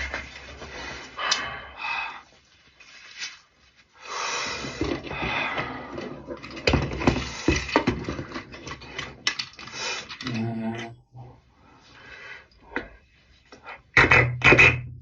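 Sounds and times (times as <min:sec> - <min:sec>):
short pitched vocal sound: 0:10.2 - 0:11.4.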